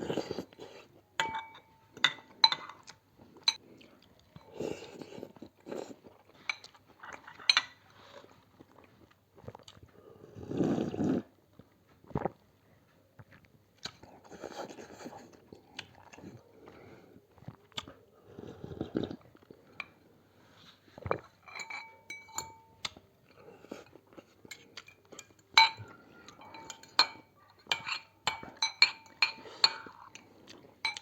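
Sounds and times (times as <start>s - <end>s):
utensils clinking against bowl: 1.2s - 2.8s, 21.4s - 22.8s, 24.5s - 30.1s.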